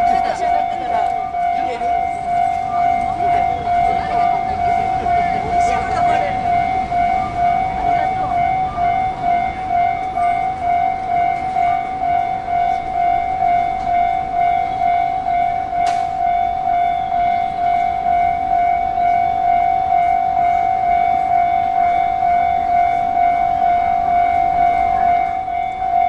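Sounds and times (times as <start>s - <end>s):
level crossing warning bell: 0.0s - 26.0s
sharp click: 15.8s - 16.1s.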